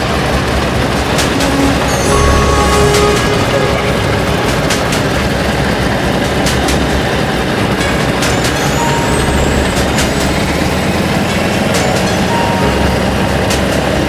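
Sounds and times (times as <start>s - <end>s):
aeroplane engine and propeller drone: 0.0s - 14.0s.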